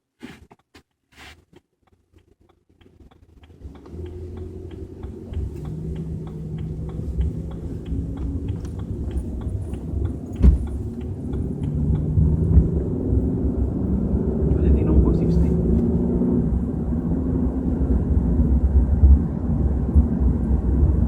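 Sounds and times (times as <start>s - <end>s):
car interior rumbling drone: 1.2s - 21.0s
sharp thump: 10.3s - 10.8s.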